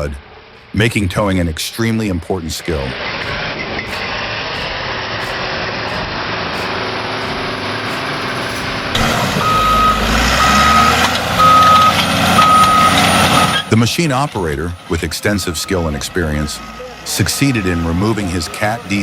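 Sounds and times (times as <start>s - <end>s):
heavy machine engine running: 2.4s - 19.0s
reversing alarm beeping: 3.2s - 13.7s, 15.2s - 18.5s.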